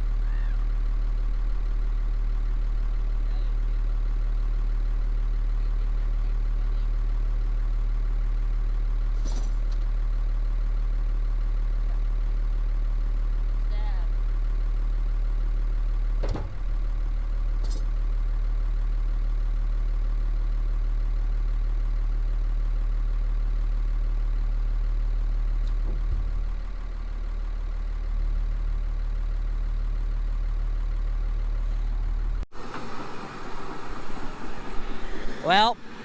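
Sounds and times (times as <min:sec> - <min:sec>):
heavy engine idling: 0:00.0 - 0:36.0.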